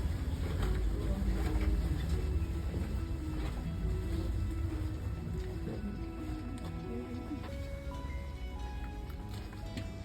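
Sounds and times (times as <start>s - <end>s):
background music melody: 2.0s - 10.0s.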